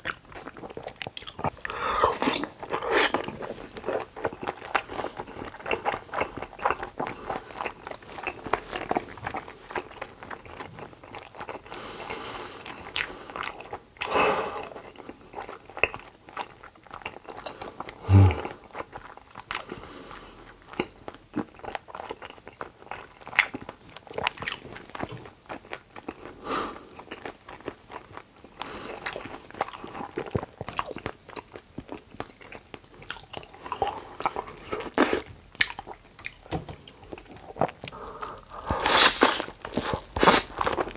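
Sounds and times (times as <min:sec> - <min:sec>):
person chewing and crunching: 0:00.0 - 0:19.7, 0:20.5 - 0:40.9
wet mouth clicks: 0:37.9 - 0:40.7.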